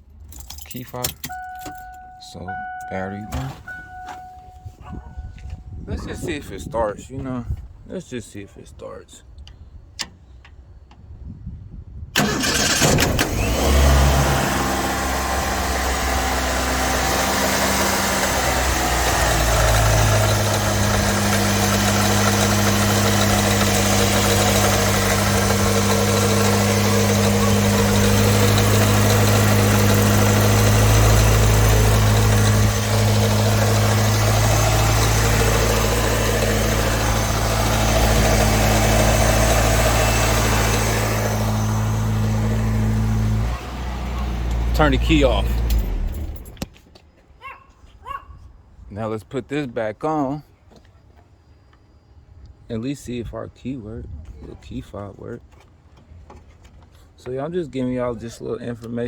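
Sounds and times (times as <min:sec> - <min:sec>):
car engine idling: 0:00.8 - 0:06.5, 0:12.2 - 0:46.6
starter motor cranking: 0:12.2 - 0:46.6.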